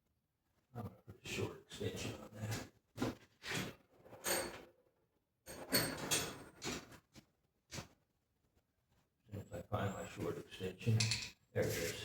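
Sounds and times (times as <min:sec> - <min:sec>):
tools rustling and clattering: 0:03.0 - 0:04.7, 0:05.5 - 0:08.0.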